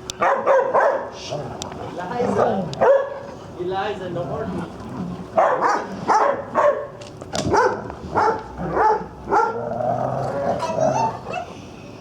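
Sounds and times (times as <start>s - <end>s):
dog barking: 0.2s - 1.1s, 2.8s - 3.2s, 5.4s - 6.9s, 7.5s - 9.6s.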